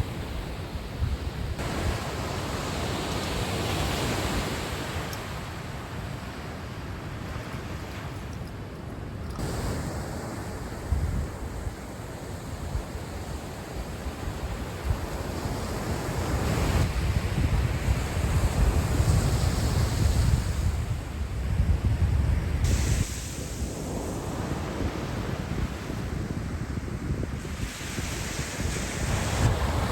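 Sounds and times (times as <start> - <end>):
ocean surf breaking on beach: 0.0 - 8.3, 9.4 - 29.9
wind buffeting microphone: 9.4 - 29.9.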